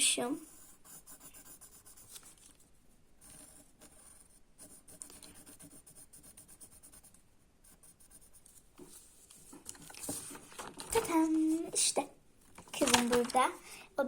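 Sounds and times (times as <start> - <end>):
pencil drawing on paper: 0.3 - 2.4, 3.2 - 9.0.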